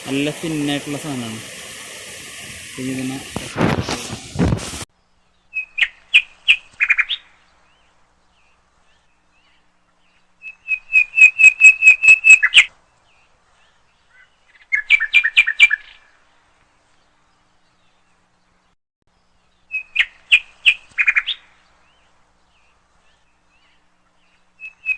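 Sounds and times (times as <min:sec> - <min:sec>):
bird chirping: 0:05.1 - 0:16.2, 0:19.3 - 0:24.9.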